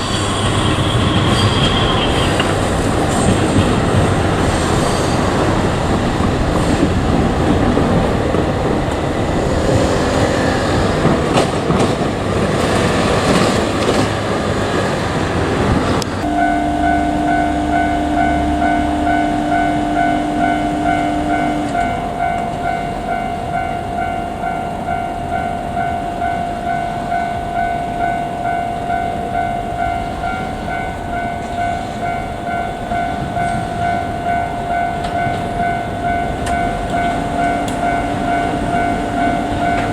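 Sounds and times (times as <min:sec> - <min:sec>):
railcar passing with wheels clattering: 0:00.0 - 0:39.9
level crossing alarm ringing: 0:16.2 - 0:39.9
low steady tone: 0:16.2 - 0:39.9.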